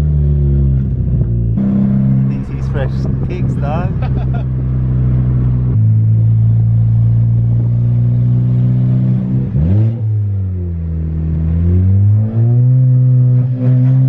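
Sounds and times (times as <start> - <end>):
car engine revving: 0.0 - 14.0.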